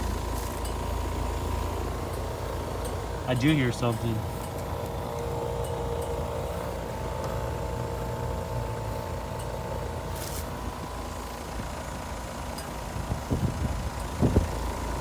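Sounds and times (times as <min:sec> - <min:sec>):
heat pump humming: 0:00.0 - 0:15.0.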